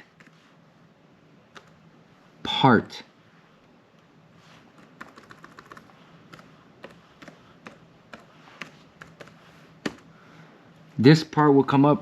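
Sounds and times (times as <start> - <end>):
typing on computer keyboard: 4.8 - 10.0.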